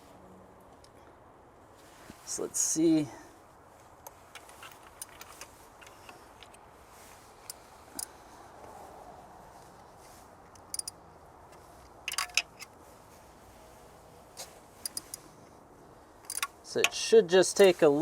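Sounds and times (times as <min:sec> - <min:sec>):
socket wrench clicks: 0:10.6 - 0:11.0, 0:16.2 - 0:16.5.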